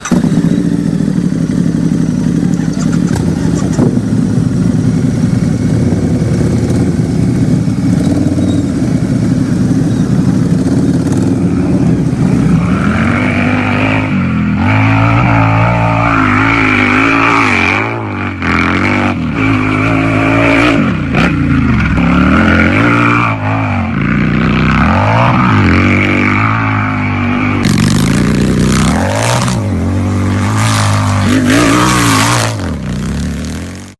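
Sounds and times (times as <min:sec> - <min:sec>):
motorcycle engine idling and revving: 0:00.0 - 0:33.9.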